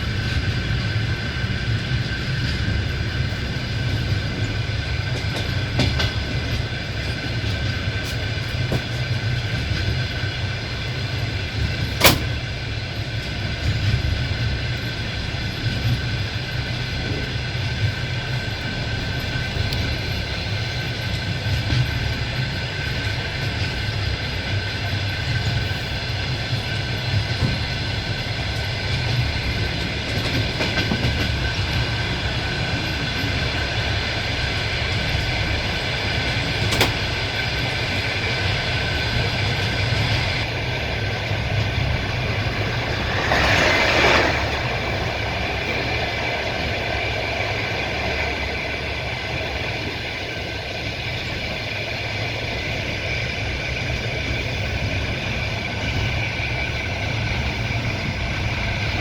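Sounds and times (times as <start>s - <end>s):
train wheels rumbling on rails: 0.0s - 59.0s
wheels clattering: 34.9s - 48.2s.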